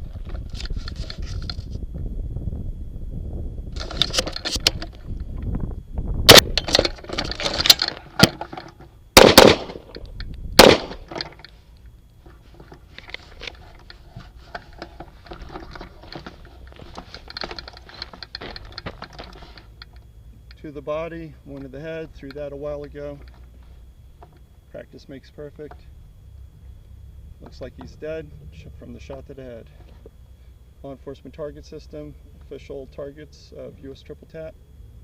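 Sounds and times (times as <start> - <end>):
loud gunshots: 9.2 - 9.9, 10.6 - 11.1.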